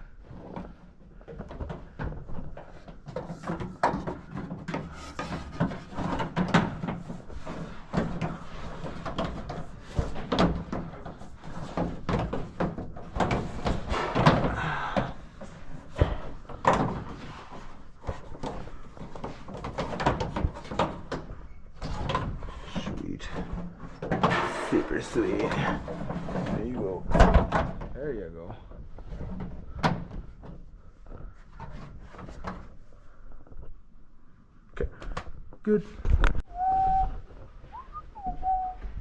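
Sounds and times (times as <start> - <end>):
knocks and bumps: 0.2 - 32.8
clattering: 23.2 - 28.0.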